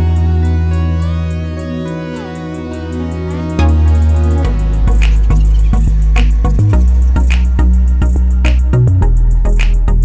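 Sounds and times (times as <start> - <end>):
song with heavy bass beat: 1.6 - 10.0.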